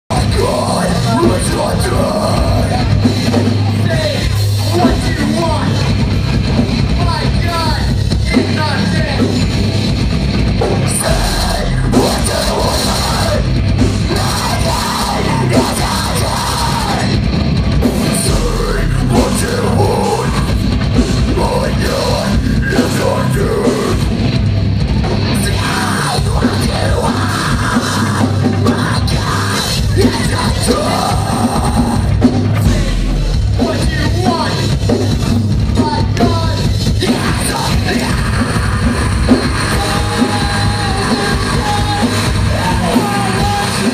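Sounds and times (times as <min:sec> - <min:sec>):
distorted guitars: 0:00.0 - 0:43.9
pounding drums: 0:00.1 - 0:43.9
screamed vocals: 0:10.9 - 0:17.2, 0:25.4 - 0:32.1, 0:37.0 - 0:43.9.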